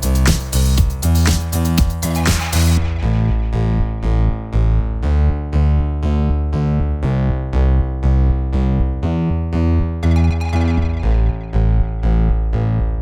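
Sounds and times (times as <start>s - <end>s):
hissing percussion: 0.0s - 2.8s
deep bass line: 0.0s - 13.0s.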